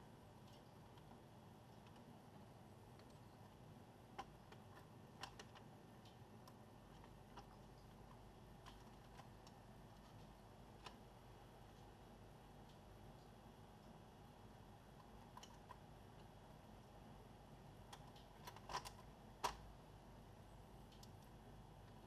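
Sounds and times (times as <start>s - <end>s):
low room hiss: 0.0s - 22.0s
small clicks and taps: 0.4s - 12.0s, 14.9s - 17.0s, 17.8s - 19.7s, 20.8s - 22.0s.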